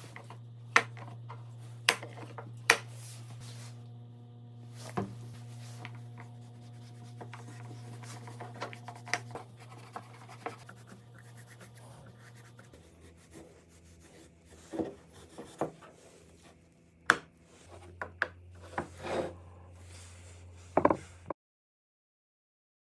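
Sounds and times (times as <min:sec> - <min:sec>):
low steady hum: 0:00.0 - 0:21.3
wood rubbing and scraping: 0:04.8 - 0:16.6, 0:17.4 - 0:21.3.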